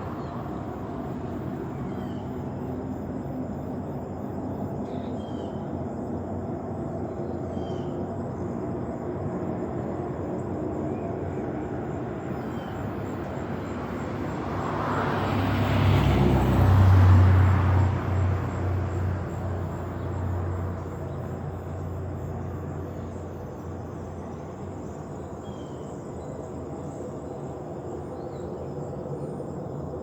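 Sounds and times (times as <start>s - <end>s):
road vehicle passing: 0.0s - 4.6s, 12.3s - 24.2s.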